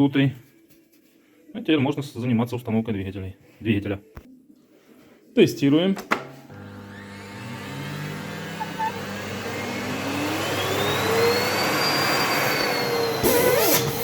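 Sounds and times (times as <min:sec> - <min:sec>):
vacuum cleaner motor whine: 0:06.5 - 0:14.0.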